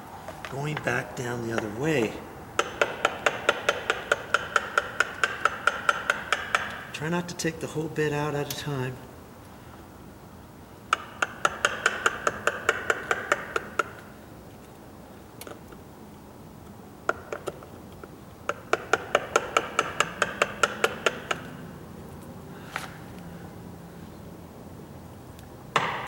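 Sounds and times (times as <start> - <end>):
hammer tapping wood chisel: 0.4 - 8.9, 10.9 - 14.8, 16.6 - 22.9, 25.7 - 26.0.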